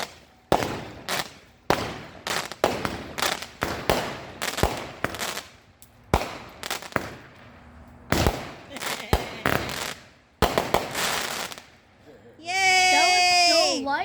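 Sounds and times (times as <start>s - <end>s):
firework cake firing bangs: 0.0s - 7.4s, 8.1s - 11.7s.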